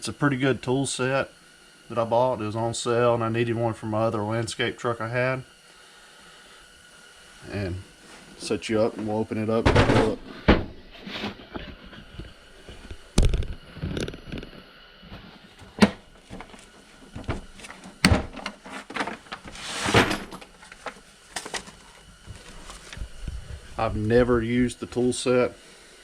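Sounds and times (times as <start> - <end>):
scraping rustle: 16.2 - 23.8.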